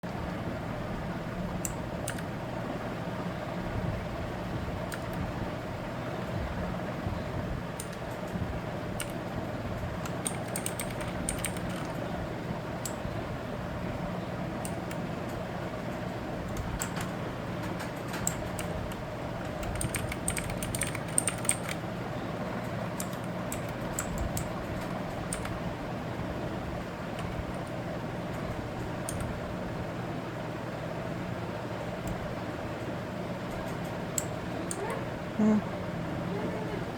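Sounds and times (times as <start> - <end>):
steady low hum: 0.0 - 36.9
mechanical keyboard clicks: 1.6 - 2.3, 7.8 - 8.4, 9.0 - 9.2, 10.0 - 12.0, 16.5 - 21.8, 23.0 - 25.6, 28.8 - 29.3.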